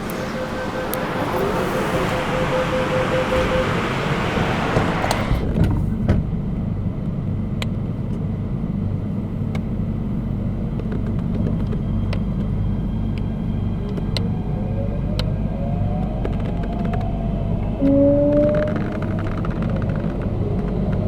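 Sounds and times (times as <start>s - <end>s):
traction motor rising whine: 0.0s - 5.8s
train hum and rumble: 0.0s - 21.0s.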